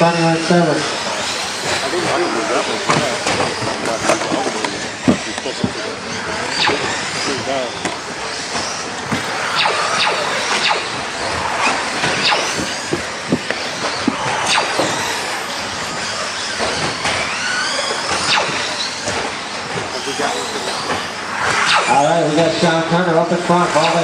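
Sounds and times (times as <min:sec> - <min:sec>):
small motors whining: 0:00.0 - 0:24.0
tyre squeal: 0:13.8 - 0:19.0.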